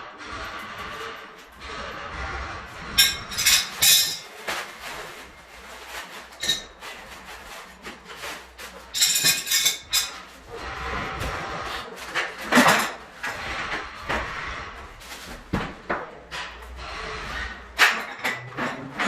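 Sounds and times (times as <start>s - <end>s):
metal tools clinking: 3.0s - 4.4s, 8.8s - 10.3s.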